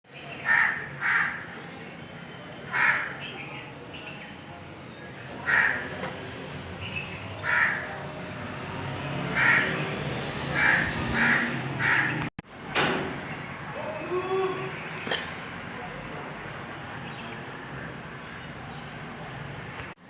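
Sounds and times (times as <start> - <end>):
crow cawing: 0.4 - 1.5, 2.7 - 3.2, 5.4 - 5.9, 7.4 - 7.9, 9.3 - 9.8, 10.5 - 12.3.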